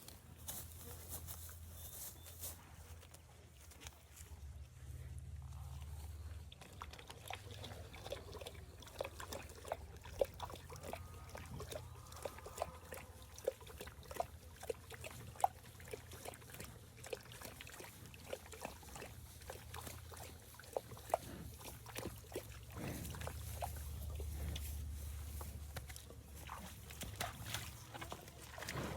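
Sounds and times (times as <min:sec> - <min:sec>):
low steady rumble: 0:02.7 - 0:28.9
water splashing and trickling: 0:05.9 - 0:28.9.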